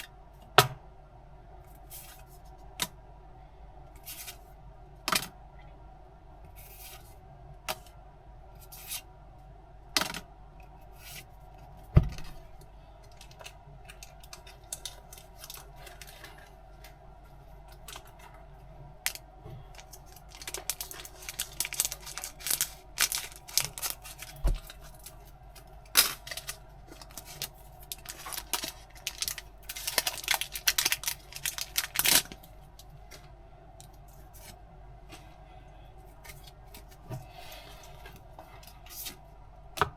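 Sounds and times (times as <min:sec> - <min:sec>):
packaging crinkling and tearing: 0:13.1 - 0:16.5, 0:19.1 - 0:32.9.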